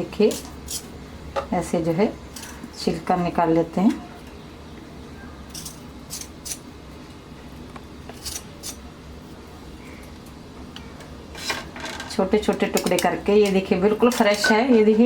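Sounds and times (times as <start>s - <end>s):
knife scraping bark: 5.5s - 6.6s, 8.1s - 8.9s.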